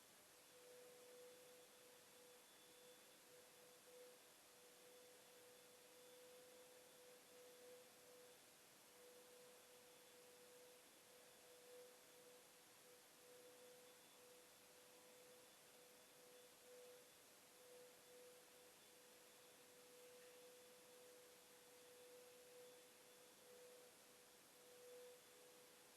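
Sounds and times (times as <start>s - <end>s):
faint steady tone: 0.0s - 25.9s.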